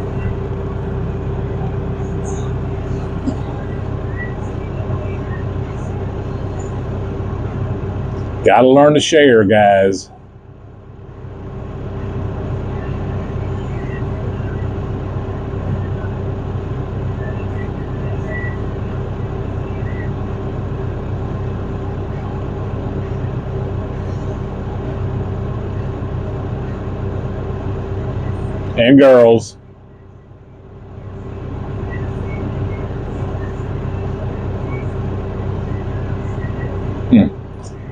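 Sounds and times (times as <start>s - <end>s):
tractor engine running: 0.0s - 37.9s.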